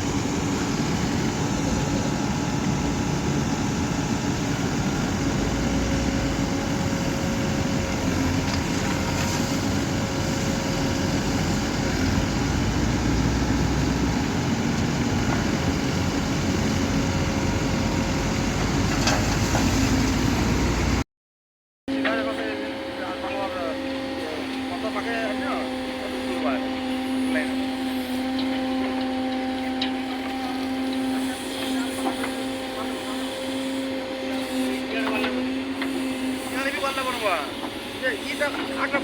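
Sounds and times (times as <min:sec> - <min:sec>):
diesel engine running: 0:00.0 - 0:21.0.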